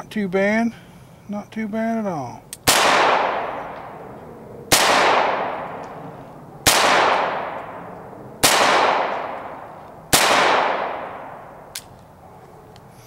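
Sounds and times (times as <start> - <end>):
pistol shots: 2.6 - 12.0.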